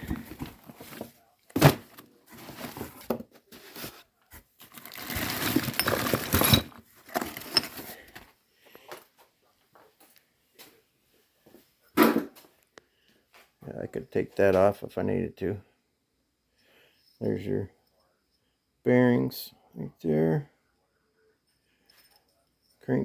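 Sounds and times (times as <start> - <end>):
metal parts rattling and scraping: 4.6 - 8.3
metal parts clunking: 4.7 - 8.2
metal parts knocking: 5.0 - 7.9.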